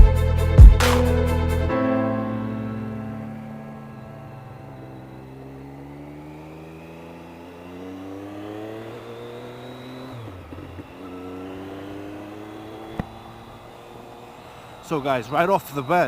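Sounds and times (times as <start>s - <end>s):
motorcycle engine accelerating: 0.0s - 16.0s.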